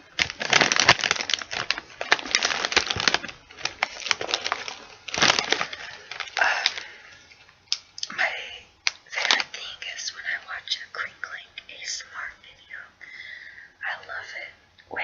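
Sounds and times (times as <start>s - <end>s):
chip bag crinkling: 0.0s - 11.8s.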